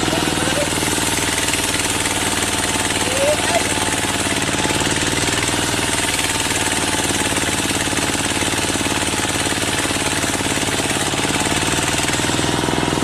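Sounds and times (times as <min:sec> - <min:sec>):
low engine-like hum: 0:00.0 - 0:04.2.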